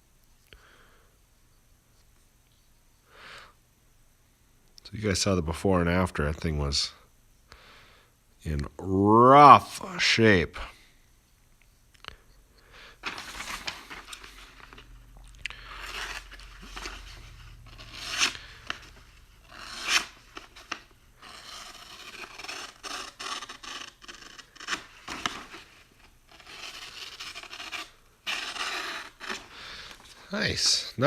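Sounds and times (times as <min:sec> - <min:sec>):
knife slicing through paper: 0:15.6 - 0:29.5.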